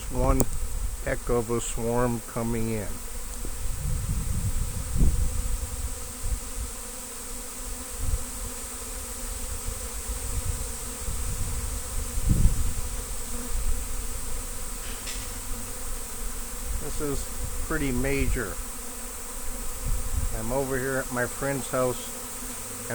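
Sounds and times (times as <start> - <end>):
bees buzzing: 0.0 - 22.9
low rumbles on microphone: 2.8 - 6.5, 10.1 - 14.3.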